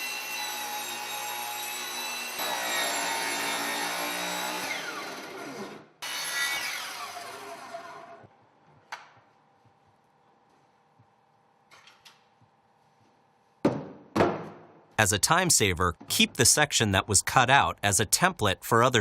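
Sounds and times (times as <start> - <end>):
power saw cutting: 0.0 - 8.2.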